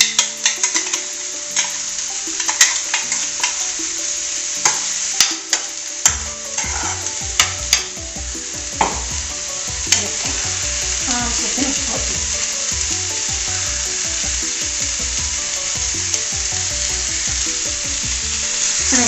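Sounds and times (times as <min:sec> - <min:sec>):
mushrooms sizzling in a pan: 0:00.0 - 0:19.0
spoon knocking against pan: 0:04.6 - 0:09.2.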